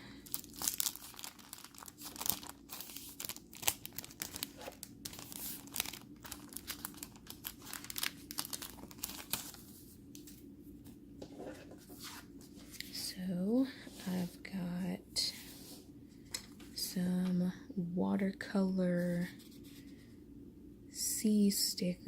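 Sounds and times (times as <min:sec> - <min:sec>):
packaging crinkling: 0:00.1 - 0:10.4.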